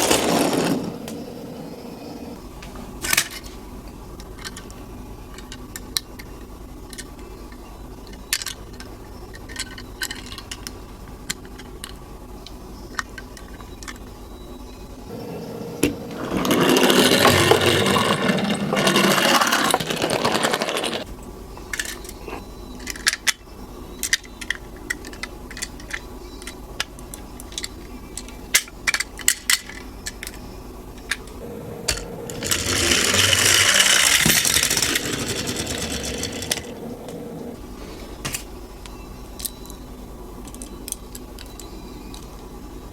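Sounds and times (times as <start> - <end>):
toy cars rolling down a track: 0.0 - 1.2, 5.3 - 12.0, 15.8 - 21.1, 22.8 - 23.4, 24.0 - 30.4, 31.0 - 37.2.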